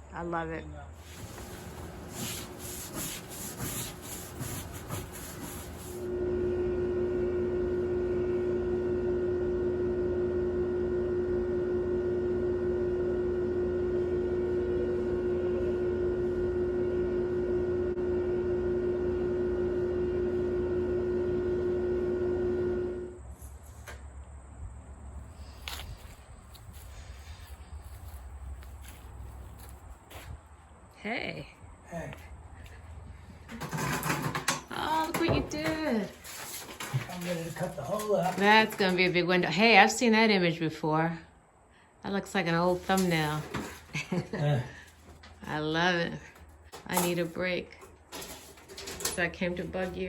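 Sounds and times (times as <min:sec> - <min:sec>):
scraping and rubbing: 0:01.0 - 0:06.1, 0:33.5 - 0:39.0.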